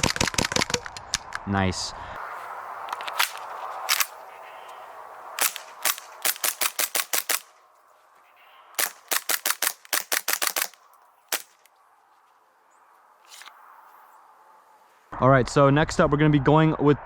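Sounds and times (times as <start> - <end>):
airsoft pistol shots: 5.4 - 7.5, 8.8 - 11.6.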